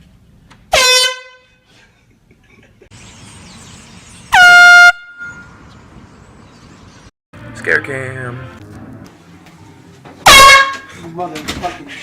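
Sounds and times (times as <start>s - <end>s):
air horn blast: 0.7s - 1.5s, 4.3s - 5.5s, 7.4s - 8.6s, 10.2s - 11.0s.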